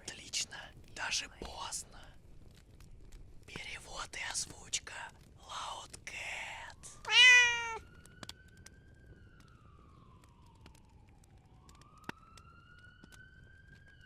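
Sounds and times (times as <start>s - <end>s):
faint siren wailing: 6.6s - 14.0s
meow-like cry: 7.1s - 7.8s.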